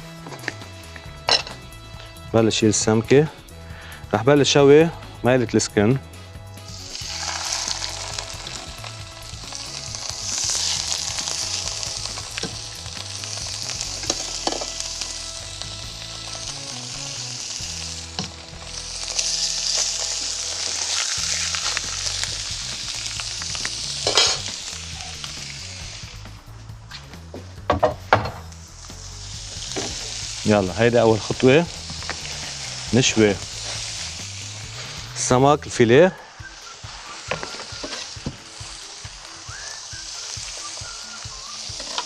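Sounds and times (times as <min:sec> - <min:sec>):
fish sizzling in a frying pan: 0:06.5 - 0:26.8, 0:28.4 - 0:42.0
sharp oil pops: 0:23.4 - 0:24.6.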